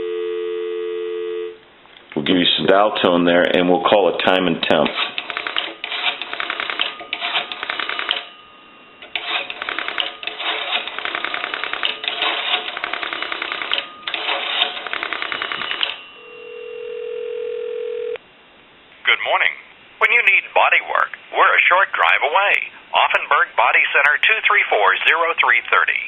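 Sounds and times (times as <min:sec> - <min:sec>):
telephone ringback tone: 0:00.0 - 0:01.6, 0:06.4 - 0:18.2
rotary dial clicking: 0:05.0 - 0:08.3, 0:09.0 - 0:16.0.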